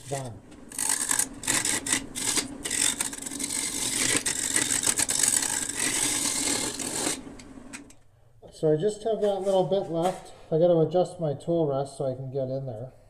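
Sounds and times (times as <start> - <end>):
turning tool scraping wood: 0.0 - 7.3.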